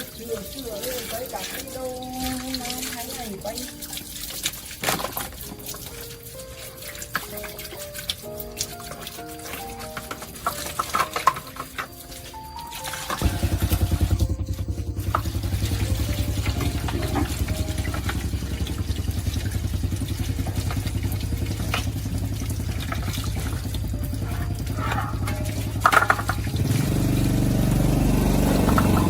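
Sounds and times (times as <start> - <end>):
small engine running: 13.0 - 29.0.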